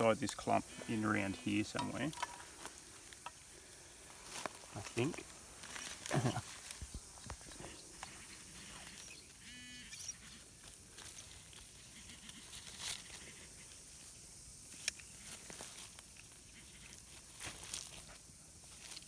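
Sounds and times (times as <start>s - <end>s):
metal detector beep: 9.0s - 10.2s.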